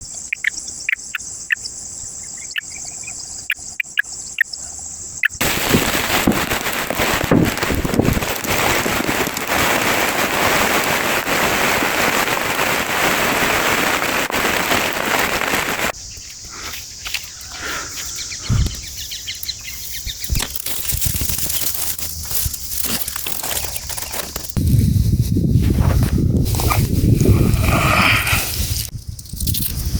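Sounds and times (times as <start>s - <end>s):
bird chirps: 0.0s - 5.4s, 16.0s - 20.5s
insects buzzing: 0.0s - 25.1s, 26.6s - 29.9s.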